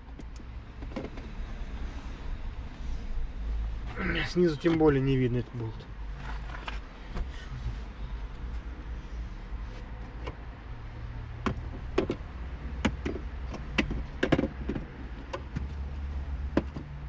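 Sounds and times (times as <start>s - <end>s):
hand tools clicking and knocking: 12.8s - 15.7s.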